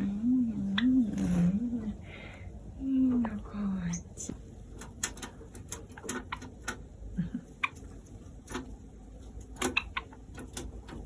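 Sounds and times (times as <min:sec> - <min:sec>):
birds clicking and tapping in cage: 0:03.9 - 0:11.0.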